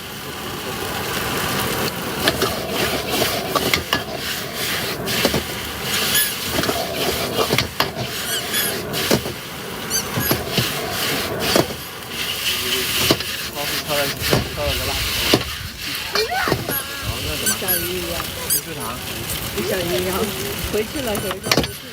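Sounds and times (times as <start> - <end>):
sizzling hiss: 0.0 - 21.9
metal spatula scraping a pan: 2.3 - 9.3, 9.9 - 19.0
short high squeaks: 5.9 - 6.6, 8.0 - 9.1, 9.8 - 10.8, 15.9 - 19.0.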